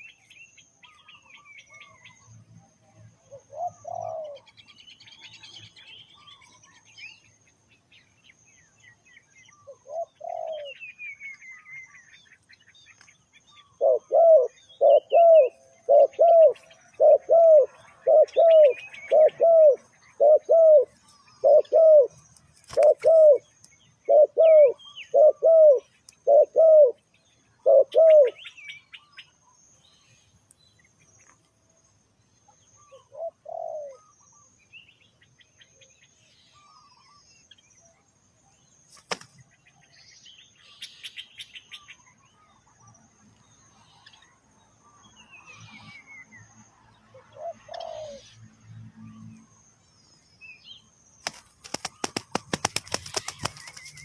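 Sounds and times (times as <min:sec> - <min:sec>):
small birds chirping: 0:00.0 - 0:54.0
dove cooing: 0:03.3 - 0:04.5, 0:09.7 - 0:10.8, 0:13.8 - 0:27.0, 0:27.6 - 0:28.5, 0:32.9 - 0:34.1, 0:47.3 - 0:48.3.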